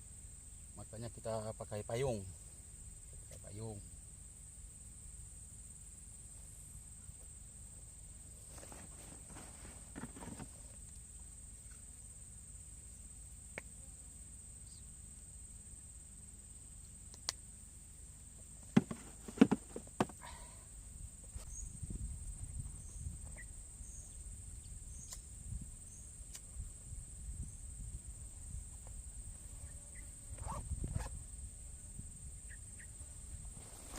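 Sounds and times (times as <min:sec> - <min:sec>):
insects droning: 0:00.0 - 0:33.9
sharp knocks: 0:18.8 - 0:20.1.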